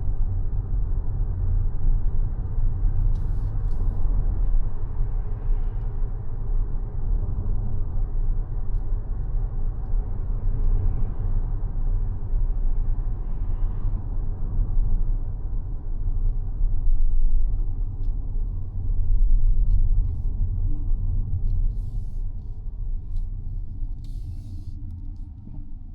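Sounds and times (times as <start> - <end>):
road and tyre noise: 8.5 - 25.9.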